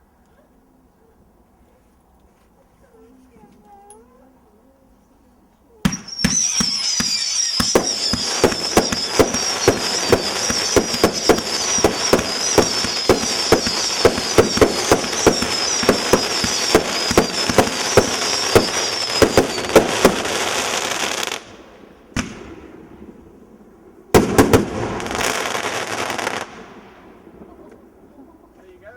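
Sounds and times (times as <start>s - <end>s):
fireworks bangs and crackles: 5.8s - 28.5s
wavering high whistle: 5.9s - 21.4s.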